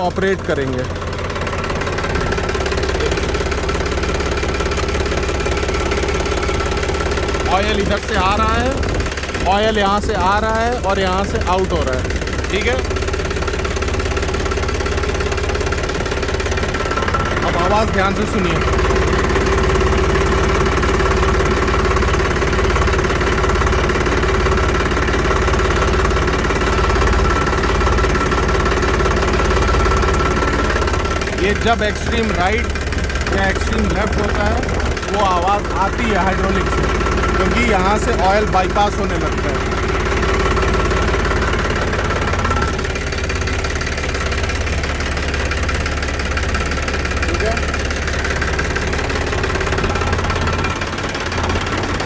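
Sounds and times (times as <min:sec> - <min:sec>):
man talking: 0:00.0 - 0:00.9, 0:07.5 - 0:12.9, 0:17.4 - 0:18.8, 0:31.4 - 0:39.7
hydraulic steering whine: 0:00.0 - 0:52.0
tractor engine idling: 0:00.0 - 0:52.0.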